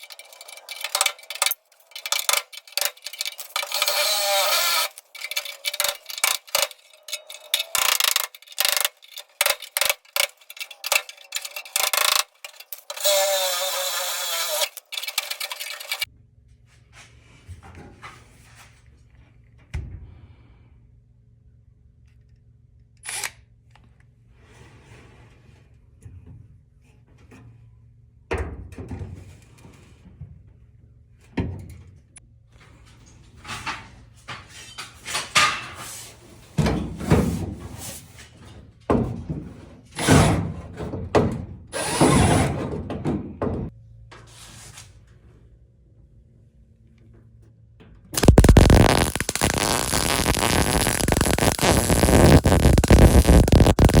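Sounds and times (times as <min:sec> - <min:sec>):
power drill bursts: 0:03.6 - 0:05.0, 0:12.9 - 0:16.1, 0:41.8 - 0:42.5, 0:48.2 - 0:54.0.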